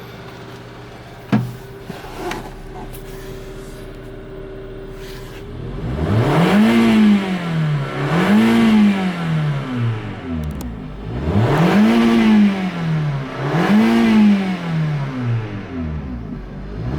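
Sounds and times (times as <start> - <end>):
car engine revving: 1.2 - 16.9.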